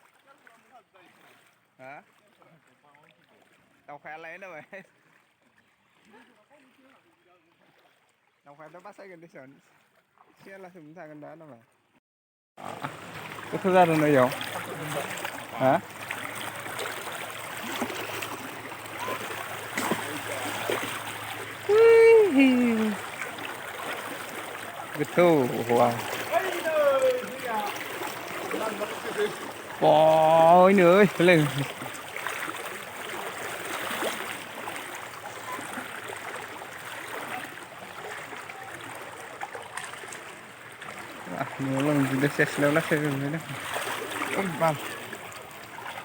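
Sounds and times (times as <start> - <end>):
floodwater rushing: 12.6 - 46.0
person speaking: 21.6 - 23.1, 25.0 - 31.8.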